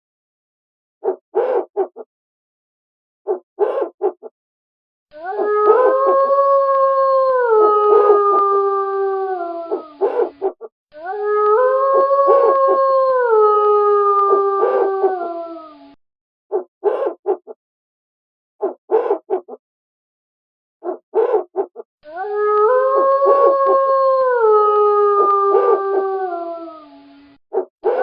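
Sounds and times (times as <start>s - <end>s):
wolf short calls: 1.0s - 2.0s, 3.3s - 4.2s, 16.5s - 17.5s, 18.6s - 19.6s, 20.8s - 21.8s
wolf howling: 5.1s - 17.2s, 20.8s - 28.0s.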